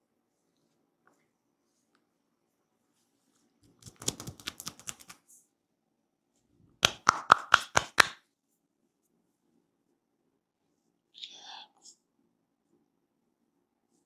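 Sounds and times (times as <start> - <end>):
hands slapping head in massage: 3.7 - 5.2, 6.8 - 8.2.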